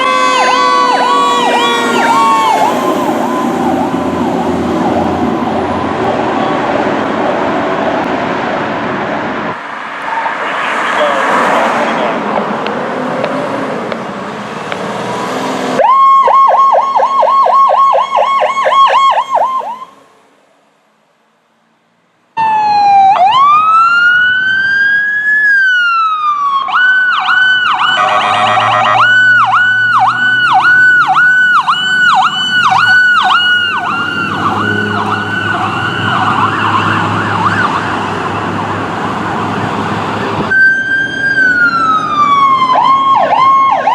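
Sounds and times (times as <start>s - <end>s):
fast siren warble: 0.0s - 6.7s, 15.8s - 20.0s, 25.8s - 38.6s
emergency vehicle sirens whooping: 0.0s - 20.1s, 22.4s - 43.9s.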